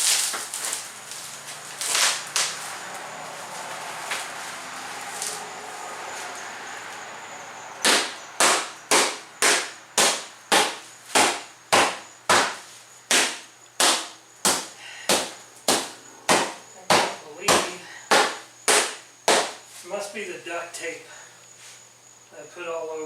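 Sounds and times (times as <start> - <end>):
hammer striking windshield glass: 7.8 - 19.6.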